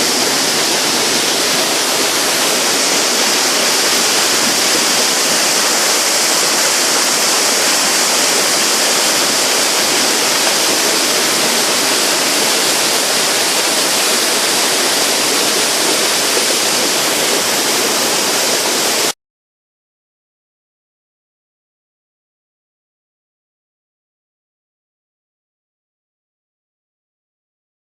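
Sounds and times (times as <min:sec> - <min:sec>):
waterfall rushing: 0:00.0 - 0:19.2.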